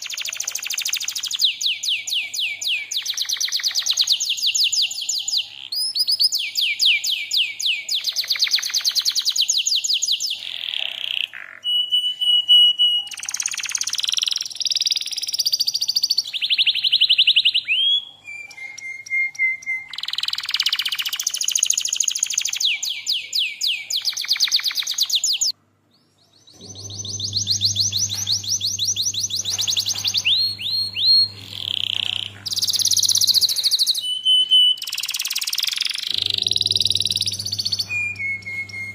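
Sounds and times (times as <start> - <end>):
canary singing trills: 0.0 - 38.9
steady low hum: 26.5 - 33.7, 36.1 - 38.9.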